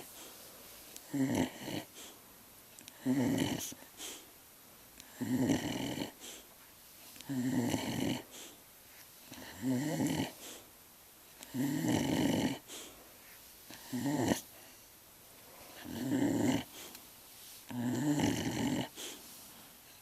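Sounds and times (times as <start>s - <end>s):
dog snoring: 1.0s - 2.2s, 2.9s - 4.3s, 5.0s - 6.5s, 7.2s - 8.6s, 9.3s - 10.6s, 11.4s - 13.0s, 13.7s - 14.8s, 15.5s - 17.0s, 17.7s - 19.3s.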